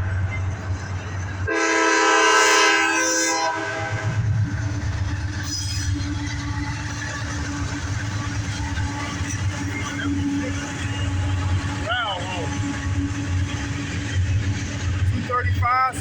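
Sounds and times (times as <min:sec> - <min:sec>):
locomotive rumble: 0:00.0 - 0:16.0
locomotive air horn blast: 0:01.5 - 0:04.3
train wheel clatter: 0:04.2 - 0:16.0.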